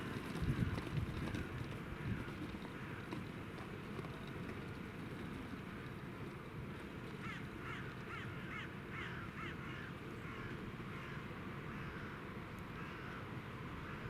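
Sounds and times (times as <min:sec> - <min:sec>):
crow cawing: 0:07.2 - 0:12.2, 0:12.8 - 0:13.2.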